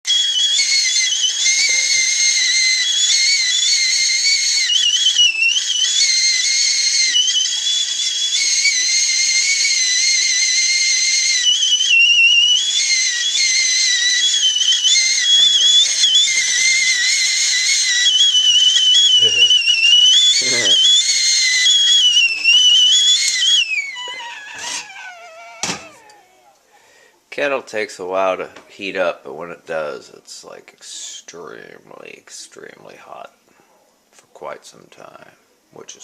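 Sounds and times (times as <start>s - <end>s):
tea kettle whistling: 0.0s - 27.0s.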